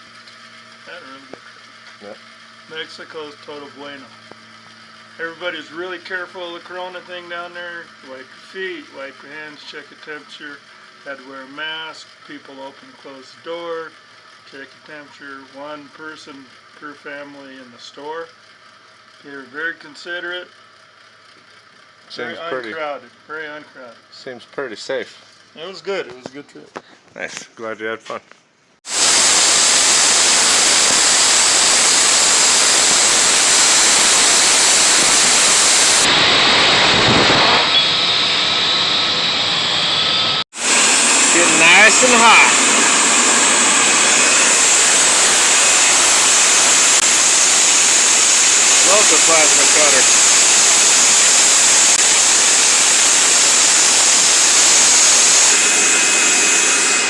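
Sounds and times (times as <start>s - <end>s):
faint high whine: 28.9s - 57.0s
forge rushing noise: 28.9s - 57.0s.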